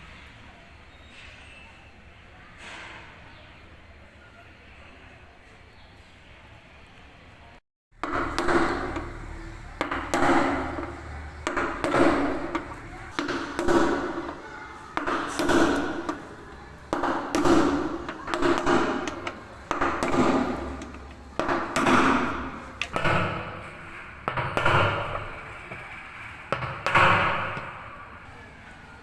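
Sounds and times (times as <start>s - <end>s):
hammer striking metal: 8.0s - 28.3s.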